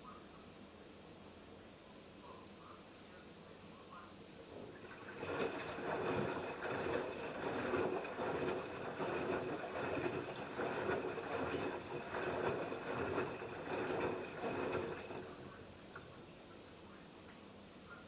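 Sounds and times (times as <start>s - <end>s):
faint steady hum: 0.0s - 18.0s
washing machine drum tumbling: 4.4s - 16.2s
water and laundry sloshing: 4.4s - 16.4s.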